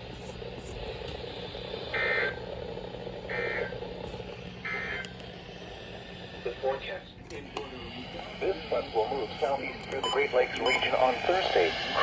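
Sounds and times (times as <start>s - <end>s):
radio hiss and hum: 6.0s - 12.0s.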